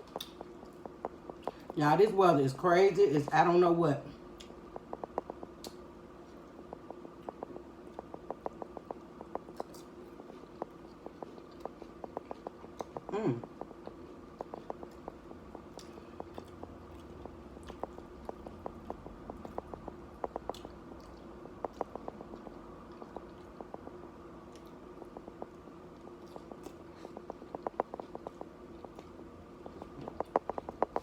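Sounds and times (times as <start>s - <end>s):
steady low hum: 0.0s - 31.0s
person chewing crunchy chips: 6.9s - 31.0s.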